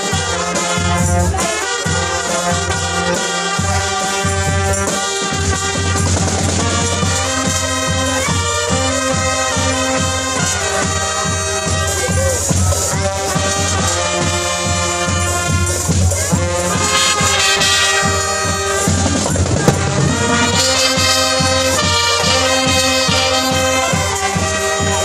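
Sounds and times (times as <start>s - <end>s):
trumpets and trombone melody: 0.0s - 25.0s
steady bass beat: 18.7s - 21.6s.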